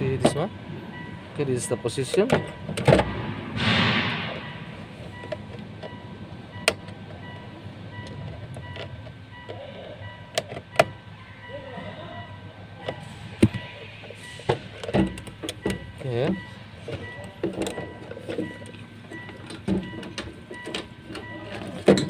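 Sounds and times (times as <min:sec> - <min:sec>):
hard parts clicking and knocking: 0:12.8 - 0:22.0.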